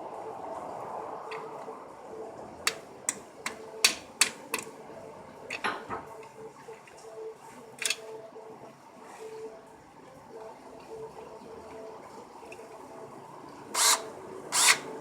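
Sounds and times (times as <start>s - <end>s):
sharp clicks and taps: 2.7s - 4.7s.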